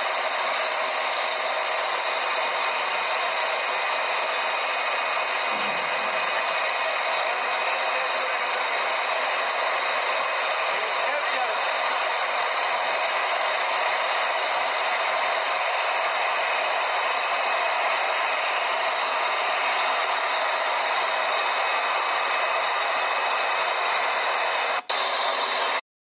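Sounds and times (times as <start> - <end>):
compressed air drilling rig rushing: 0.0 - 25.8.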